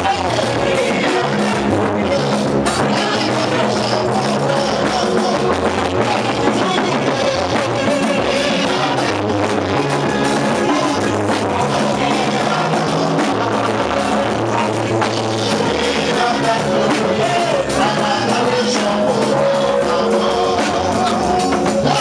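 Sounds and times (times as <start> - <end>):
loud band music: 0.0 - 22.0.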